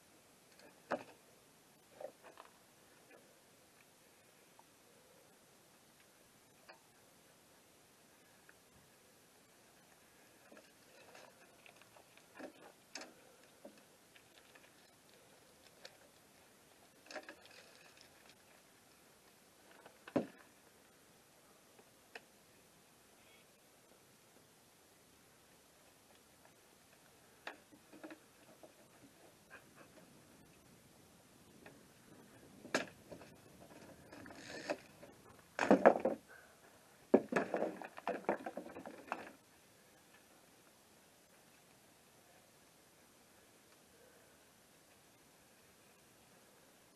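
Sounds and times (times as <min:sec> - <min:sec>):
clattering knocks of wood: 0:20.1 - 0:20.4, 0:35.6 - 0:36.2, 0:37.1 - 0:39.4
wood scraping: 0:31.6 - 0:36.3, 0:37.1 - 0:39.4.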